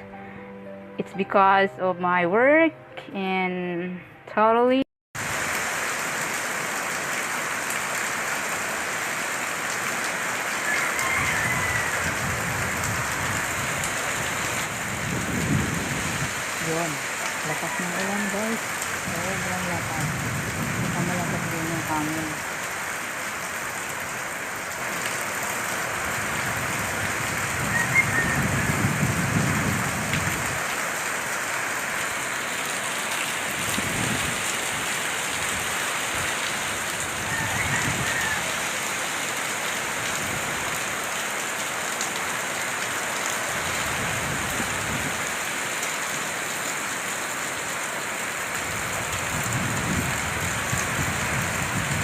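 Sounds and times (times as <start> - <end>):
heavy rain pouring: 5.2 - 52.0
strong wind gusting: 11.2 - 17.1, 18.9 - 21.9, 26.0 - 30.7, 33.4 - 38.5, 48.7 - 52.0.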